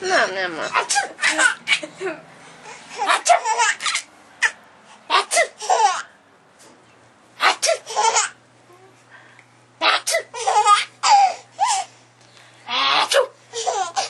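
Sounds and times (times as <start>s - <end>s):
baby laughing: 0.7s - 2.0s, 2.6s - 6.1s, 7.4s - 8.4s, 9.8s - 11.9s, 12.8s - 14.0s.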